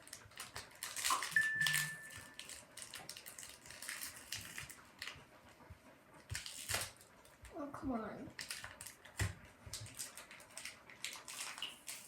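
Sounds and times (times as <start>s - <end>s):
plastic wrapping crinkling: 0.0s - 5.2s, 6.2s - 7.1s, 8.4s - 12.0s.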